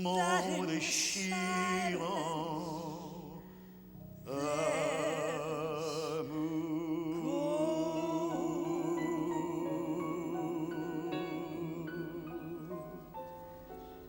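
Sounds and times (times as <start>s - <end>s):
voices singing with vibrato: 4.3s - 13.6s.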